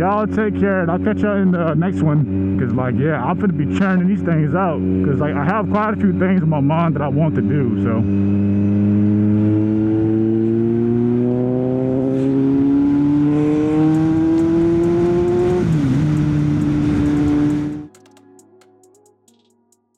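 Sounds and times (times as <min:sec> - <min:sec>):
motorcycle engine accelerating: 0:00.0 - 0:18.0
wind noise on microphone: 0:13.5 - 0:17.9.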